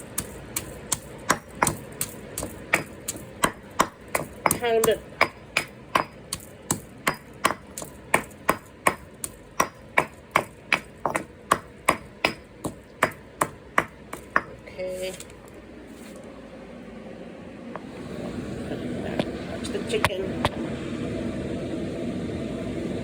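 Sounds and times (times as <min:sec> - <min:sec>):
pestle pounding in stone mortar: 0:00.0 - 0:15.3.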